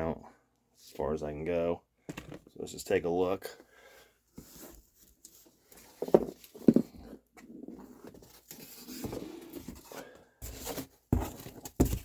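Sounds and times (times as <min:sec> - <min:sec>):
cardboard box rustling: 0:04.4 - 0:12.0
dull thumps on cardboard box: 0:10.4 - 0:12.0.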